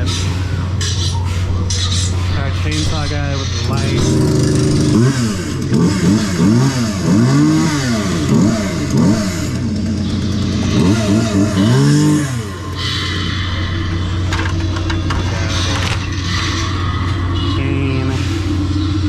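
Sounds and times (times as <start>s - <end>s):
steady low hum: 0.0s - 19.0s
chainsaw revving: 3.6s - 16.6s.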